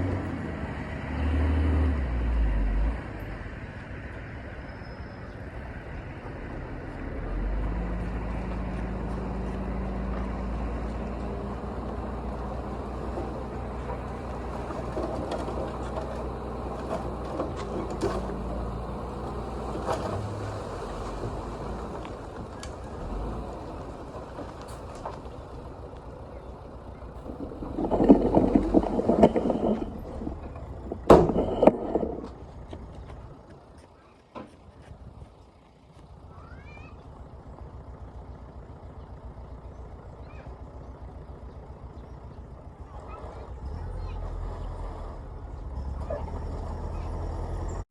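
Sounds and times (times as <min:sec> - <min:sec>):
heavy machinery engine running: 0:00.0 - 0:47.9
clicks and knocks: 0:27.2 - 0:33.0.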